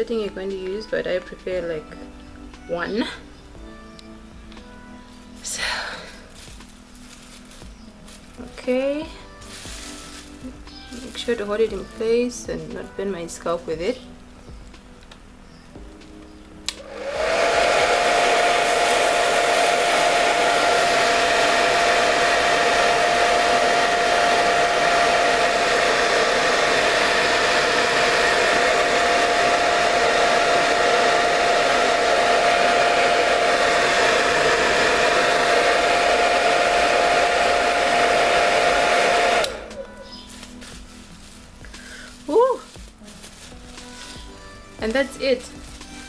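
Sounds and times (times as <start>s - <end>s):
hair dryer whining: 3.6s - 7.8s, 16.7s - 46.0s
hair dryer switch click: 16.7s - 17.2s.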